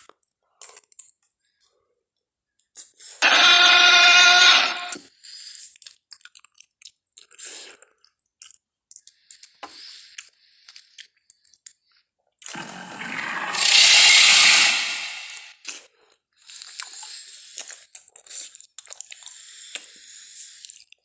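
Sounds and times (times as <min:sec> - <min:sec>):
wet chewing and crunching: 0:00.0 - 0:01.8, 0:04.9 - 0:12.6, 0:15.6 - 0:21.0
loud rasping dinosaur noise: 0:03.2 - 0:05.0, 0:12.5 - 0:15.5.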